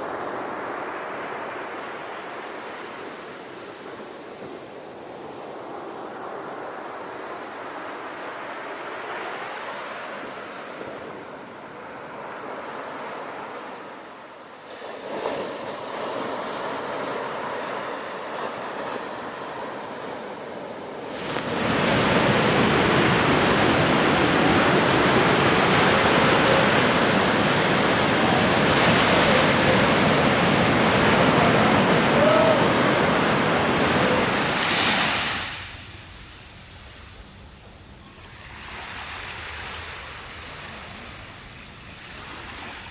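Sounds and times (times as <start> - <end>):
sea waves rushing: 5.1 - 37.2.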